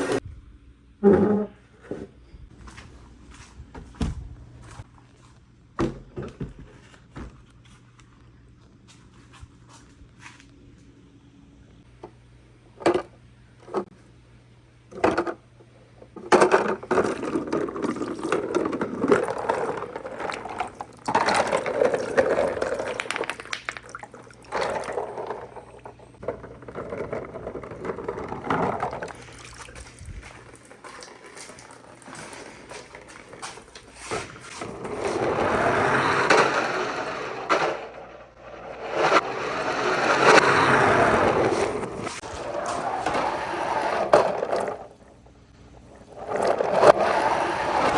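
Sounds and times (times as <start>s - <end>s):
marbles rattling down wooden run: 16.9s - 25.7s.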